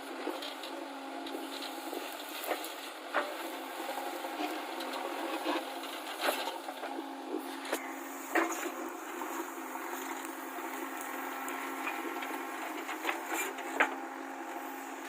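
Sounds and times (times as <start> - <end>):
engine running: 0.0 - 15.0.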